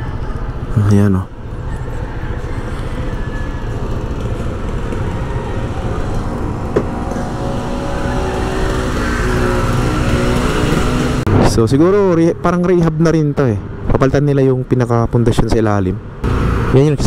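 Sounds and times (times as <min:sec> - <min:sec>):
traffic rumble: 0:00.0 - 0:17.0
vehicle engine running: 0:01.4 - 0:11.4, 0:16.2 - 0:17.0.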